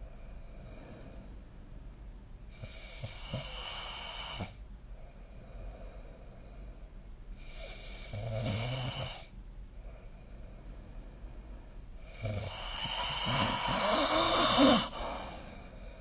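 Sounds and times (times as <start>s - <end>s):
person snoring: 2.5s - 4.6s, 7.4s - 9.3s, 12.0s - 16.0s.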